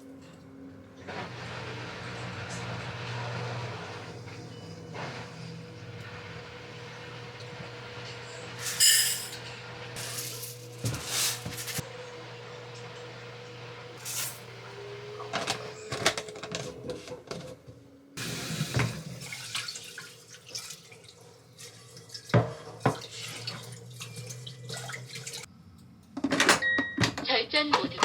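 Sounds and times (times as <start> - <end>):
low appliance hum: 0.0 - 26.8
dishes clinking: 8.6 - 11.8
tap running into sink: 18.2 - 19.7, 22.3 - 24.8.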